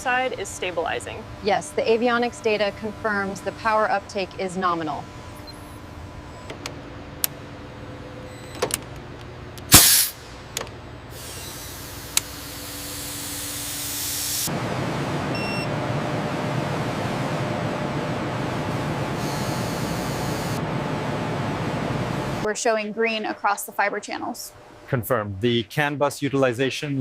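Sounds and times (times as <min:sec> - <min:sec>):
machinery humming: 0:00.0 - 0:25.2
burst of hissing air: 0:09.7 - 0:10.2, 0:11.1 - 0:14.5.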